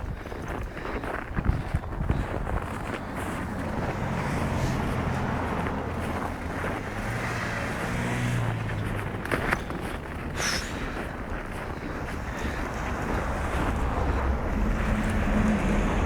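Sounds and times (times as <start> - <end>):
wind noise on microphone: 0.0 - 5.4, 9.1 - 16.0
engine running: 0.2 - 16.0.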